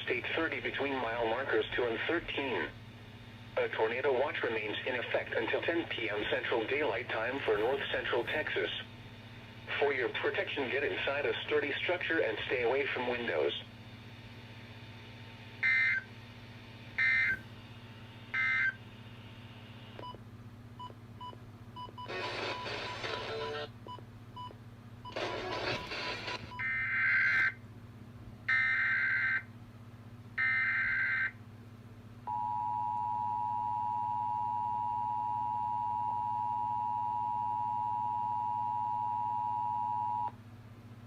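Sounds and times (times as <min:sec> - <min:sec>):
radio static: 0:00.0 - 0:02.8, 0:03.6 - 0:08.9, 0:09.7 - 0:13.7, 0:25.2 - 0:26.5.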